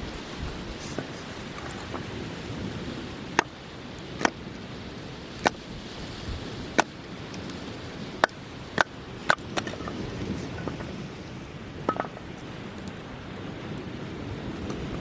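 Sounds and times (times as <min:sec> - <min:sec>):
axe chopping firewood: 0:04.2 - 0:04.4, 0:05.4 - 0:05.6, 0:06.7 - 0:07.0, 0:08.2 - 0:09.9.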